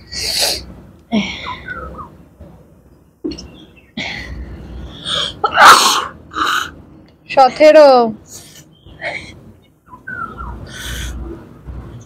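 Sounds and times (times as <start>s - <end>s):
sharp sniffling breaths: 8.3s - 9.6s, 10.6s - 11.5s.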